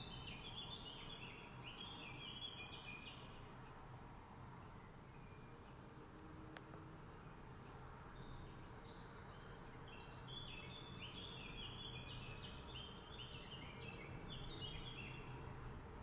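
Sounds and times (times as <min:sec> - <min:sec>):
small birds chirping: 0:00.0 - 0:03.5, 0:07.6 - 0:15.6.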